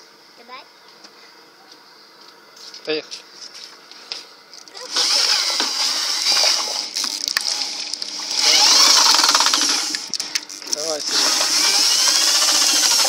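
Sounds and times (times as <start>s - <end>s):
electric drill motor whining: 4.7s - 13.0s.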